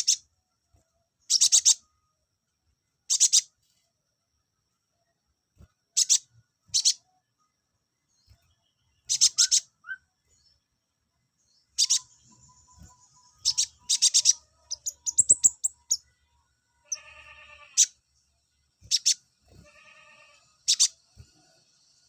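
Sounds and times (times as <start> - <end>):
bird singing high chirps: 0.0 - 0.3, 1.2 - 2.0, 3.1 - 3.5, 5.9 - 10.7, 11.4 - 18.0, 18.8 - 22.0
buzzy bird call: 9.1 - 10.0, 11.8 - 16.0, 18.9 - 21.0.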